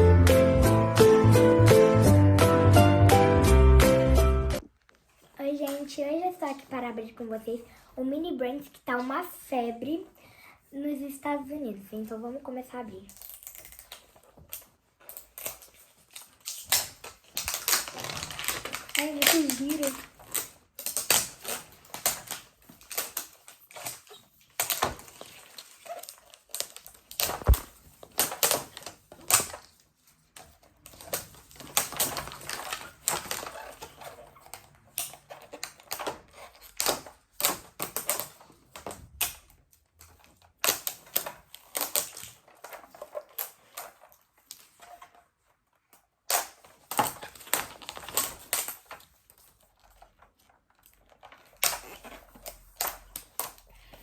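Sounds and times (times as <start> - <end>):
toy packaging crinkling: 12.9 - 39.0, 39.8 - 45.5, 46.3 - 54.0.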